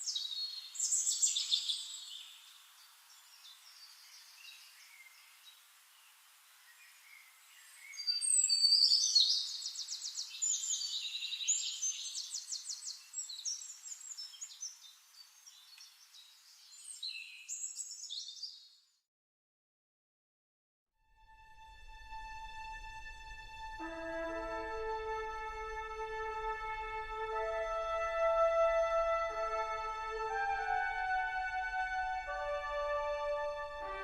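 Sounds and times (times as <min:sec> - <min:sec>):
songbirds chirping and trilling: 0:00.0 - 0:18.9.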